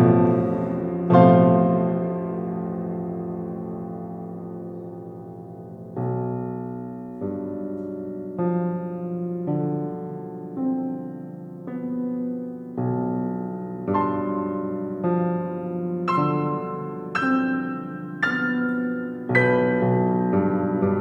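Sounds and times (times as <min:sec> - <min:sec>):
slow solo piano chords: 0:00.0 - 0:21.0.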